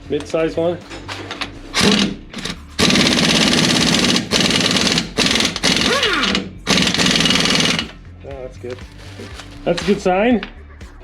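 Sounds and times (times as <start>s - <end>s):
impact wrench hammering: 1.0s - 8.0s, 9.3s - 10.1s.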